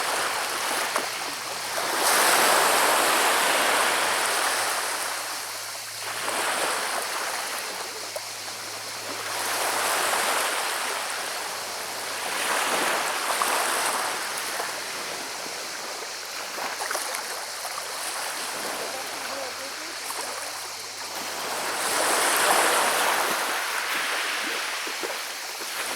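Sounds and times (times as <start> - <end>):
waves washing over shingle: 0.0 - 7.8, 9.0 - 25.9.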